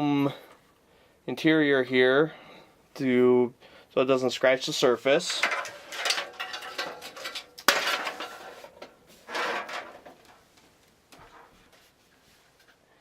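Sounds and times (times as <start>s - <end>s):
scraping and rattling: 5.2s - 10.6s.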